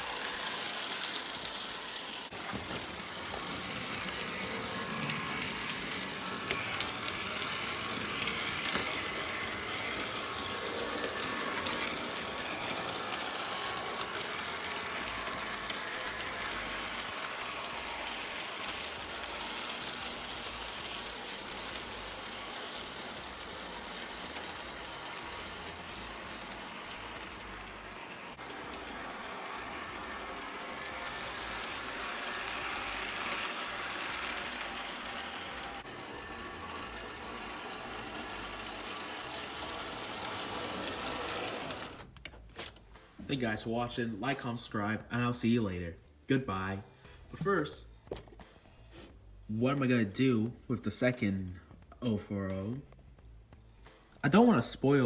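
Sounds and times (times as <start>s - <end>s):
model train running on track: 0.0s - 42.3s.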